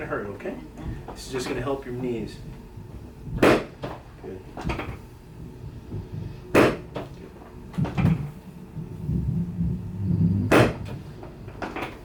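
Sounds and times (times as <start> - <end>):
knee joint clacks and pops: 10.5 - 11.0.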